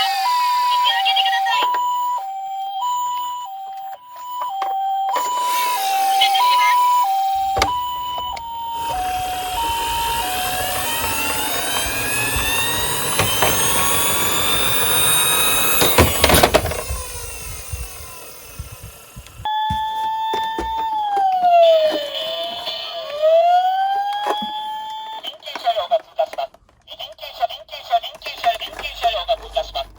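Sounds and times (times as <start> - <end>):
toy electronic sirens: 0.0 - 29.9
rising whine: 7.3 - 19.5
toy cars rolling rumble: 8.2 - 19.2, 21.6 - 29.9.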